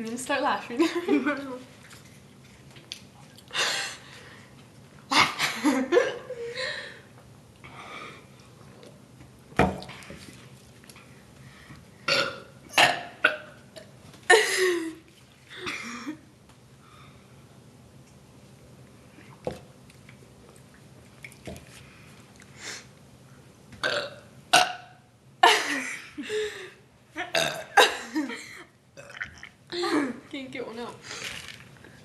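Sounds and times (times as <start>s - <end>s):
forced burps: 12.1s - 13.9s, 23.8s - 25.0s, 27.3s - 27.9s, 29.0s - 29.6s.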